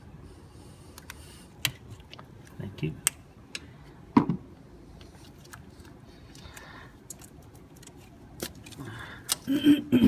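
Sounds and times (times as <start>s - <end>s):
man talking: 2.6s - 3.1s.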